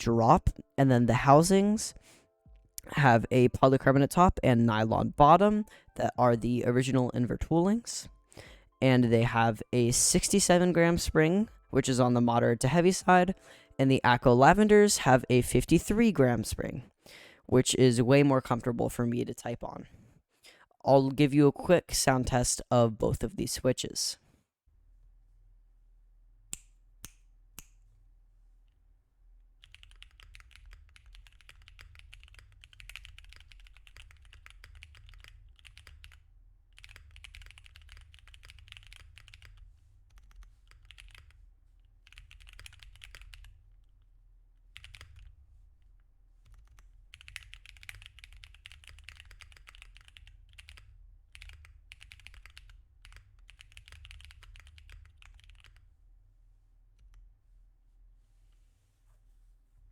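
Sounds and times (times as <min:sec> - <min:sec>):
mechanical keyboard typing: 0:29.6 - 0:41.4, 0:42.0 - 0:43.5, 0:44.7 - 0:45.3, 0:46.4 - 0:55.8.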